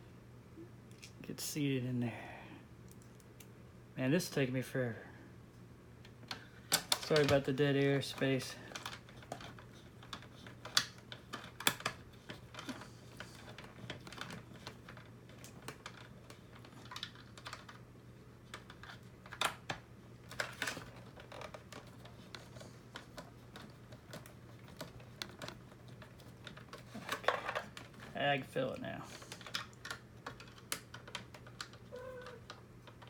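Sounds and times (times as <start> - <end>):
steady low hum: 0.0 - 33.0
plastic parts and screws clicking: 8.2 - 17.8, 18.4 - 28.1, 29.2 - 33.0.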